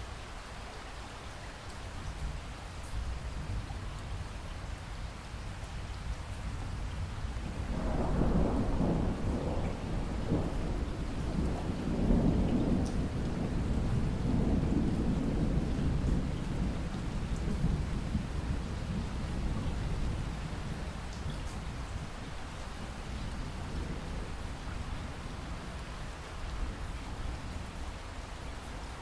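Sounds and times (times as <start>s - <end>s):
steady rain falling: 0.0s - 29.0s
rolling thunder: 7.0s - 22.2s.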